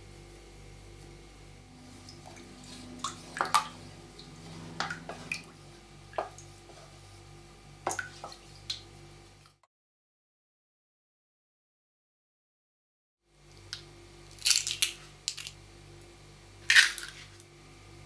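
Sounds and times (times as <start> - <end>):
steady low hum: 0.0 - 9.4.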